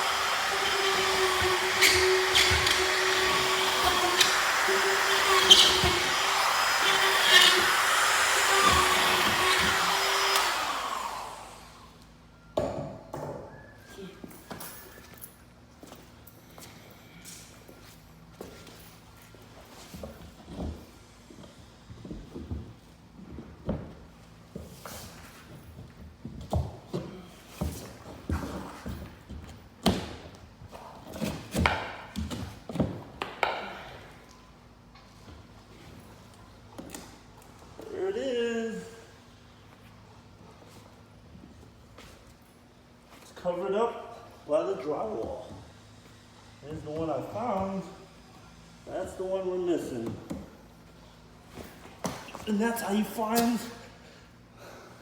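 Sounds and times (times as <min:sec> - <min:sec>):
high-speed electric motor running: 0:00.0 - 0:11.9.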